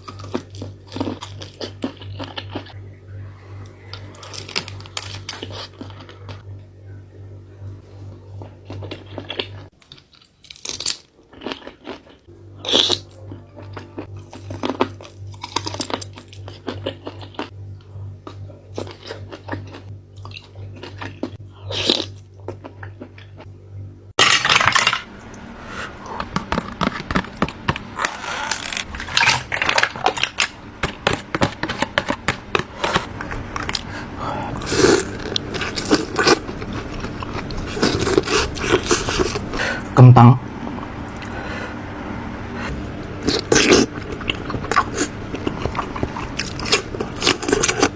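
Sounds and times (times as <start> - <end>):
chewing and crunching food: 0.0 - 2.8, 3.5 - 6.5, 7.7 - 23.5, 24.2 - 39.9, 42.6 - 47.9.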